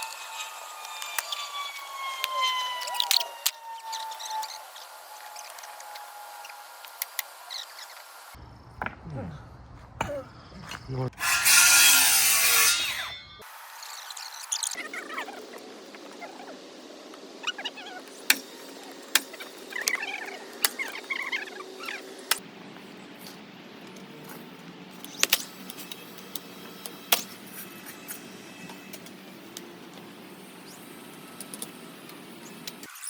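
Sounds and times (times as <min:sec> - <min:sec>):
steady background hum: 0:12.7 - 0:32.9.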